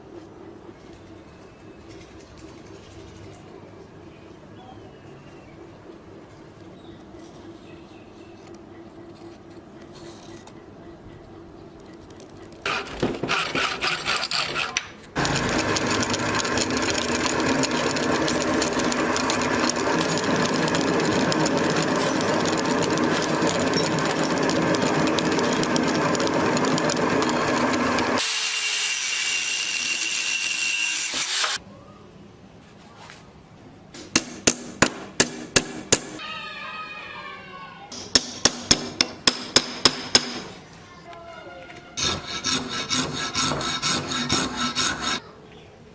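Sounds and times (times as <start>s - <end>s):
power tool grinding knife: 12.6s - 31.6s, 42.0s - 45.2s
high whine of tool: 15.2s - 31.6s.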